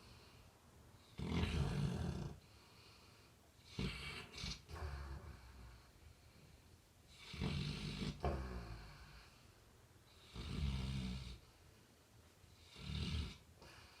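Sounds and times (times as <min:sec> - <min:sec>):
dog snoring: 0:01.1 - 0:02.5, 0:03.6 - 0:05.9, 0:07.1 - 0:09.4, 0:10.2 - 0:11.5, 0:12.6 - 0:14.0.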